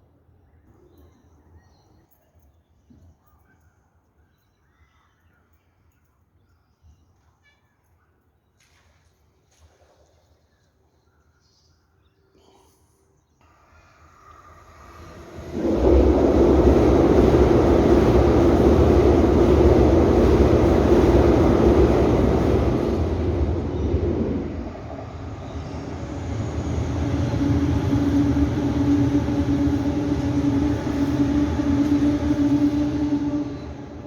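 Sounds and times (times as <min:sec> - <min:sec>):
loud steady rumble: 0:14.5 - 0:34.0.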